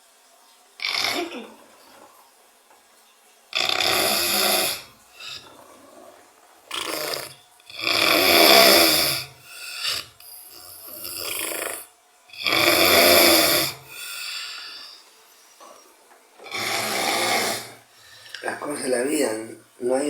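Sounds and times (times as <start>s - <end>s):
man snoring loudly: 0.8s - 1.4s, 3.5s - 6.1s, 6.7s - 15.0s, 16.4s - 17.9s.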